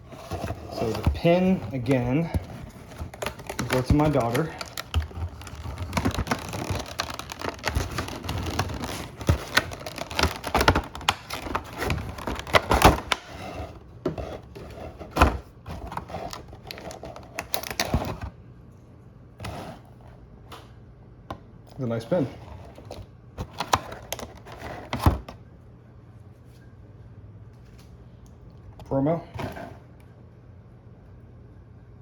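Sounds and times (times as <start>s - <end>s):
packaging crinkling and tapping: 0.1s - 13.3s, 15.2s - 18.3s.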